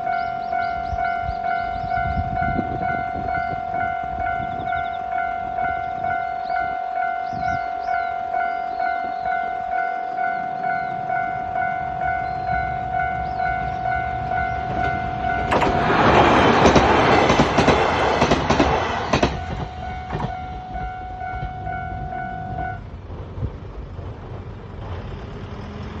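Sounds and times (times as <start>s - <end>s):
level crossing warning bell: 0.0s - 23.0s
train rumble and wheel clatter: 0.0s - 26.0s.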